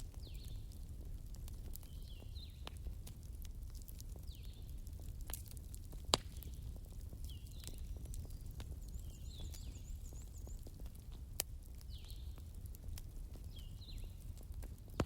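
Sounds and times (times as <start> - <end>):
wood fire crackling and popping: 0.0 - 15.0
birds chirping: 6.4 - 11.0.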